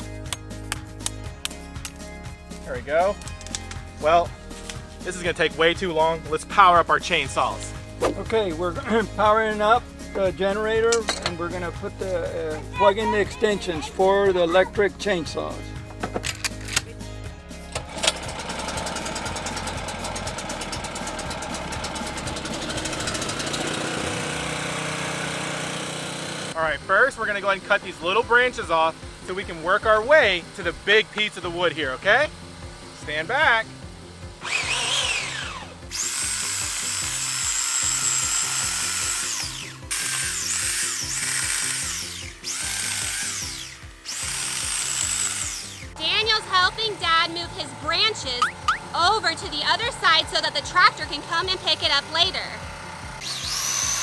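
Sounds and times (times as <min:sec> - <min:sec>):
background music with beat: 0:00.0 - 0:22.9, 0:47.1 - 0:50.4
electric chainsaw whining: 0:03.0 - 0:54.0
generator engine running: 0:05.1 - 0:54.0.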